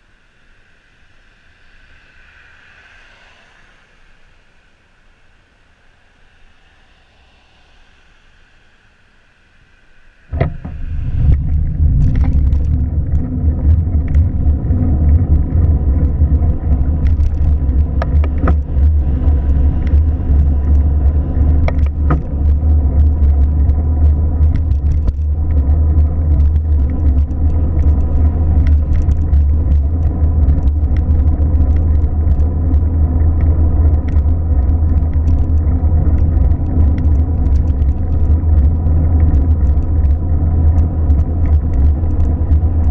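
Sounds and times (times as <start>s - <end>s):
car engine rumble: 0.0s - 42.9s
scattered clicks: 10.3s - 42.9s.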